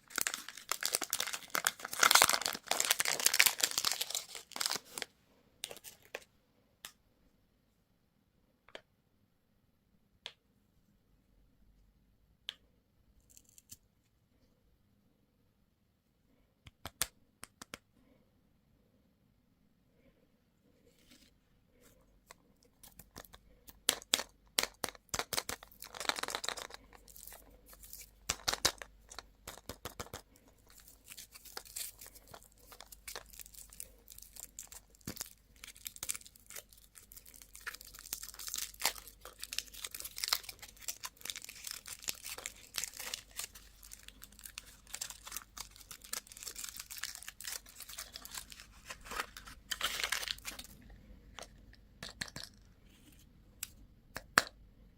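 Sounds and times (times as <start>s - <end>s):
candy wrappers crinkling: 0.0s - 6.2s, 22.8s - 51.5s.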